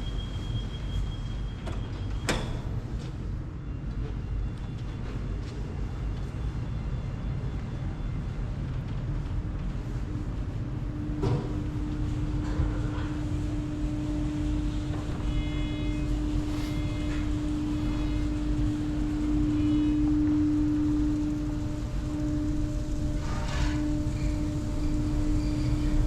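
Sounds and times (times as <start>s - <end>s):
steady machine hum: 9.5s - 26.0s
faint high tones: 15.8s - 18.4s
low rumble: 15.9s - 23.2s.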